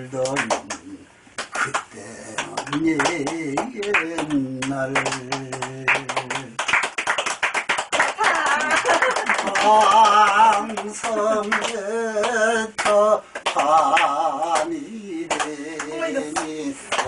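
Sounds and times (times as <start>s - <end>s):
people clapping in rhythm: 0.1s - 17.0s
person singing: 9.5s - 17.0s.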